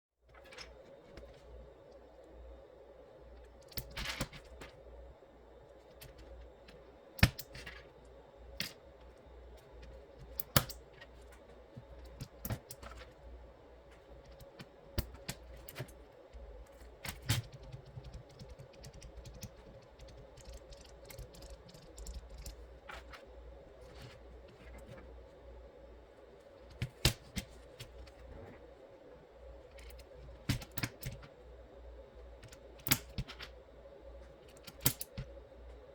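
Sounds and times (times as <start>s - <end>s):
faint steady hum: 0.2s - 35.9s
plastic keyboard clicks and clacks: 17.0s - 22.6s.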